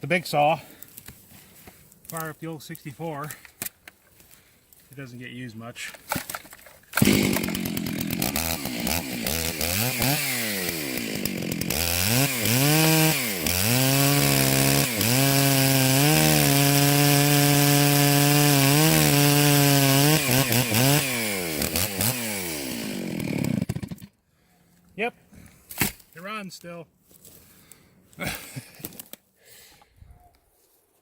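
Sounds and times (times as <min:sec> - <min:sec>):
chainsaw revving and idling: 0:07.0 - 0:24.1.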